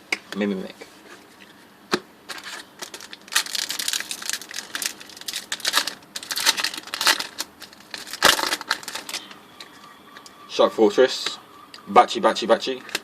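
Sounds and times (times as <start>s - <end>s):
foil wrapper crinkling: 2.3s - 9.3s.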